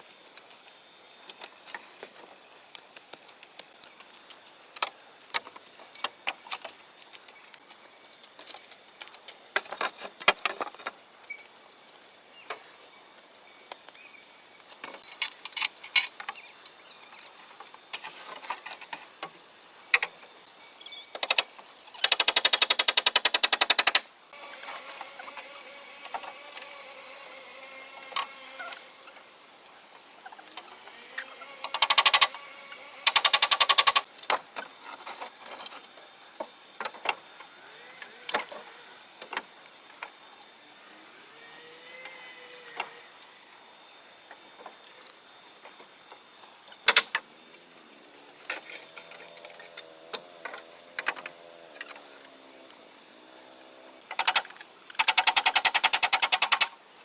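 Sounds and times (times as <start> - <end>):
power tool rattling: 33.0 - 34.0, 54.1 - 56.7.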